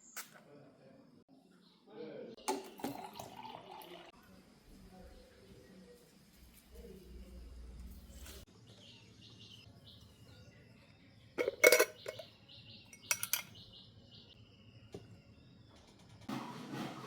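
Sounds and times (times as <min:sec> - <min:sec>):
faint high chirping: 0:08.1 - 0:16.0.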